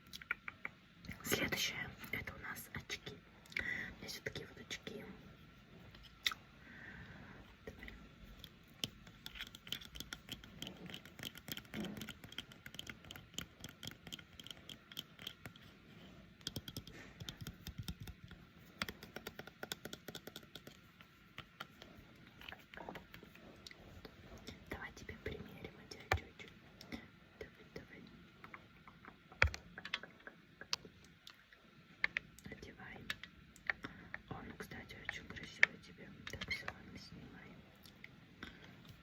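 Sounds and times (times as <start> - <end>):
clicks and taps on eyeglass frames: 16.4 - 20.8.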